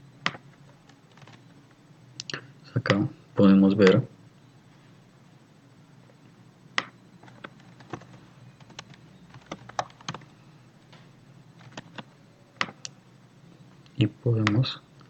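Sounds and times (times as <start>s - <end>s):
keyboard and mouse clicks: 6.8s - 10.3s.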